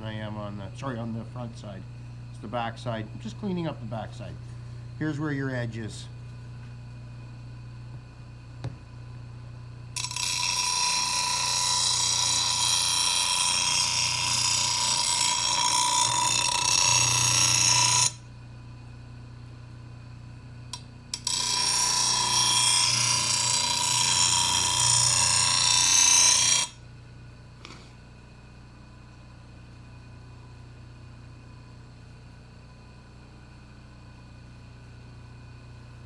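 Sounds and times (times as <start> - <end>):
blade grinding on stone wheel: 10.0 - 18.2, 21.2 - 26.8.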